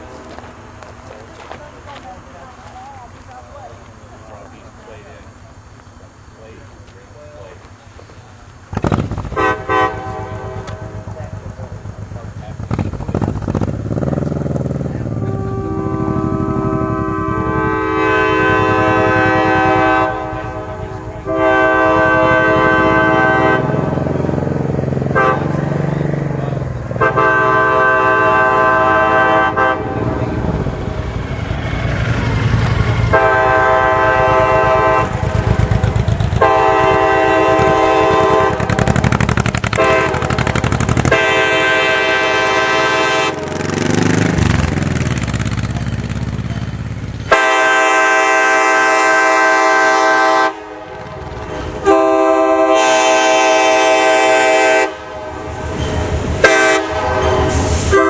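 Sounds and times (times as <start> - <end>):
locomotive air horn blasts: 9.2 - 11.3, 14.9 - 25.9, 26.9 - 44.6, 47.2 - 58.0
low rumble: 28.7 - 41.9.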